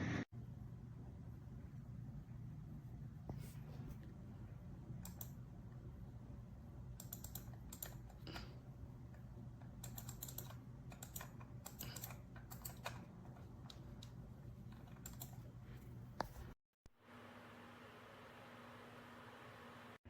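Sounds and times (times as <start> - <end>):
steady low hum: 0.0 - 16.6
typing on computer keyboard: 5.0 - 5.4, 7.0 - 8.4, 9.8 - 14.1, 14.7 - 15.4.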